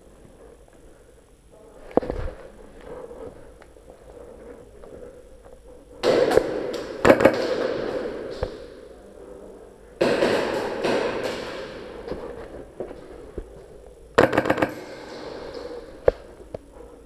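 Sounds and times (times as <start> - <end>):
rapid airsoft gunfire: 6.0 - 8.7, 10.0 - 12.1, 14.2 - 16.0.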